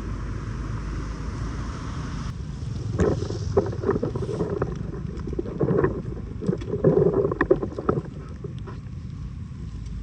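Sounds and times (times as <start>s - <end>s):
wind rumble on microphone: 0.0s - 10.0s
floodwater splashing and gurgling: 2.6s - 8.8s.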